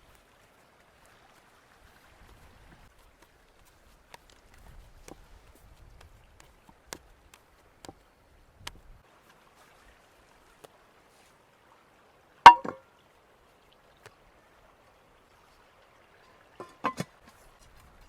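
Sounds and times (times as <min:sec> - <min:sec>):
cookware knocking: 0:12.5 - 0:12.8, 0:16.6 - 0:17.0.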